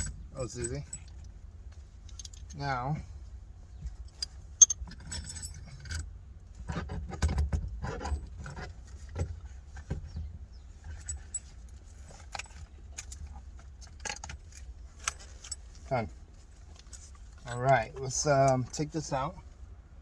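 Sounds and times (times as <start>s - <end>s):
metal tools clinking: 0.0s - 1.2s, 4.1s - 6.0s.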